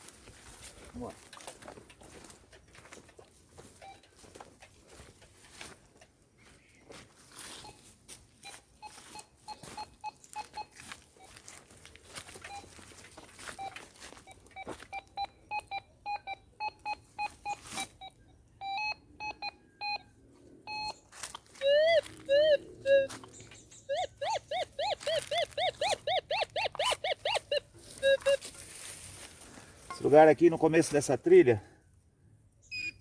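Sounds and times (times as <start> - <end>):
metal detector beeping: 3.6 - 5.0, 7.4 - 20.1, 20.7 - 29.2, 29.8 - 31.1, 32.6 - 33.0
rustle of brush: 27.8 - 29.9.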